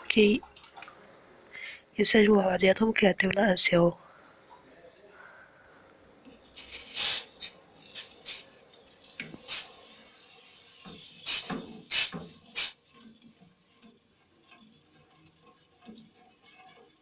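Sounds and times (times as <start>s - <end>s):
small taps and scrapes: 6.2s - 17.0s.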